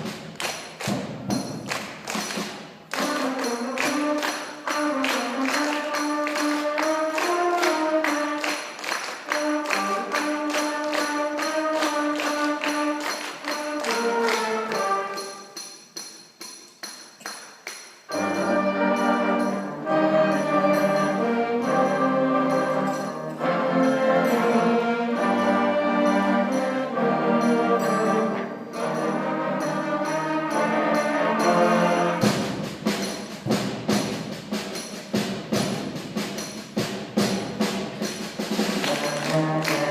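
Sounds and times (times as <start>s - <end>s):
concert band playing: 0.0s - 15.6s, 18.1s - 39.9s
low brass: 38.8s - 39.9s.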